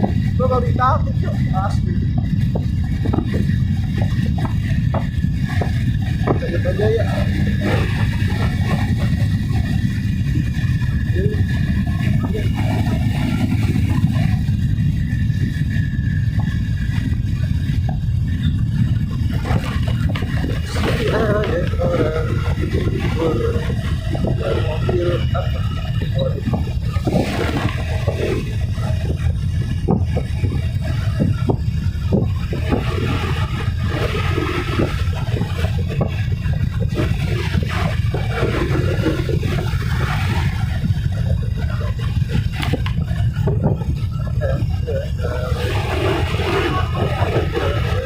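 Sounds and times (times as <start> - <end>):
motorcycle engine: 0.0 - 48.0
road noise: 0.0 - 48.0
wind buffeting microphone: 0.0 - 48.0.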